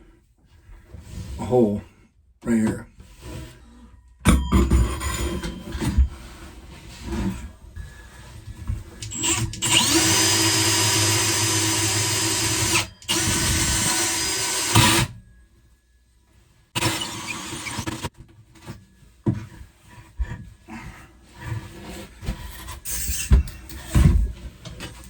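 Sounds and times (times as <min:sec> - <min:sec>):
power drill boring into wood: 0:09.0 - 0:15.1, 0:16.8 - 0:18.1.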